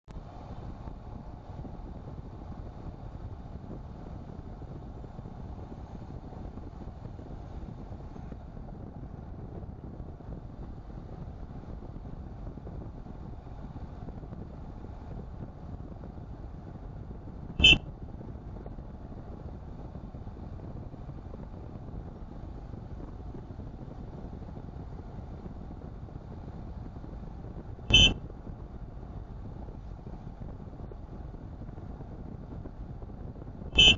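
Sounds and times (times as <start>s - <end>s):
car road and engine noise: 0.0s - 33.9s
short loud beeps: 17.6s - 17.8s, 27.9s - 28.2s.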